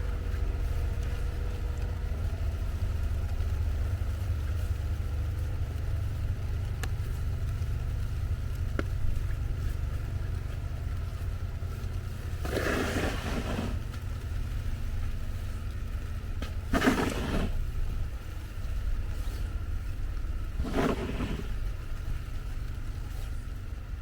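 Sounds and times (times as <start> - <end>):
steady low rumble: 0.0 - 24.0
cars passing on snowy road: 9.9 - 24.0.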